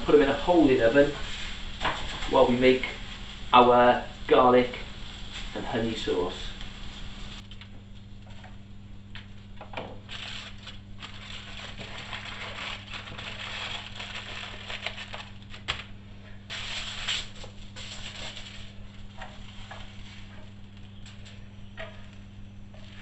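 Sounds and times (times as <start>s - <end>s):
low electrical hum: 0.0s - 23.0s
aluminium foil crinkling: 10.0s - 15.9s, 16.5s - 21.4s.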